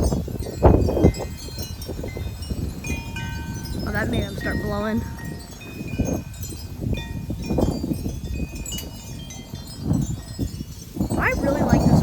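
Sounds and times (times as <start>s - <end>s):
metal tube wind chimes ringing: 0.0s - 12.0s
wind buffeting microphone: 0.0s - 12.0s.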